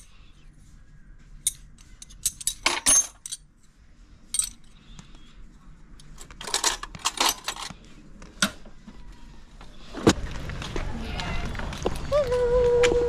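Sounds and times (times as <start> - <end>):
small metal parts clinking: 1.4 - 3.5, 4.3 - 4.8, 6.0 - 7.8.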